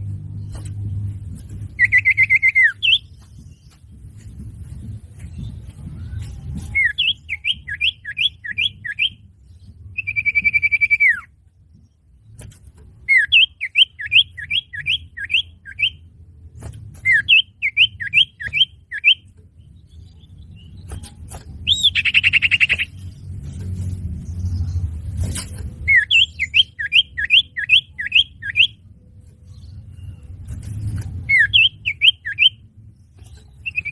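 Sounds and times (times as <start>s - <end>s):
low rumble: 0.0s - 13.0s, 19.4s - 26.8s.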